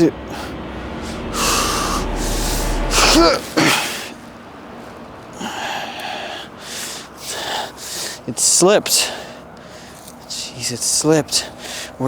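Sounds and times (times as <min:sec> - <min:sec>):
man breathing hard: 0:11.4 - 0:12.0.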